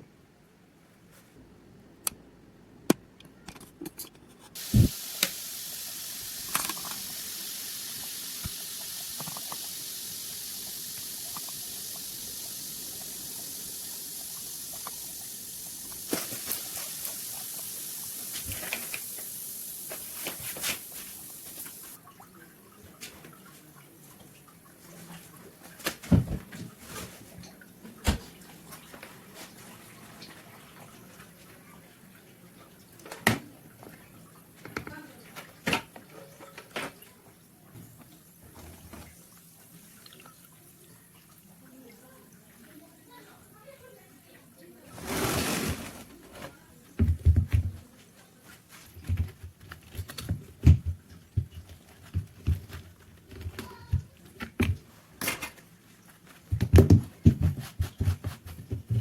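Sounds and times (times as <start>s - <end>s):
water running from tap: 4.6s - 22.6s, 27.5s - 44.6s.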